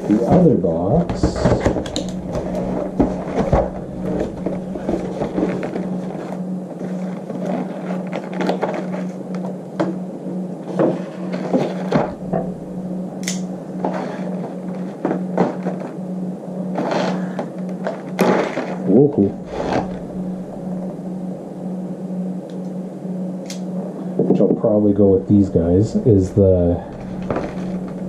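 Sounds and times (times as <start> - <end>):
steady low hum: 0.0 - 28.0
packaging clicks and rustles: 4.8 - 9.2.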